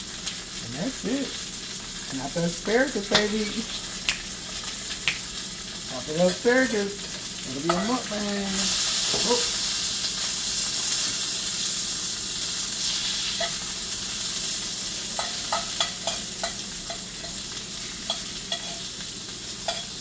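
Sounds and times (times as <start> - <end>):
vegetables sizzling in oil: 0.0 - 20.0.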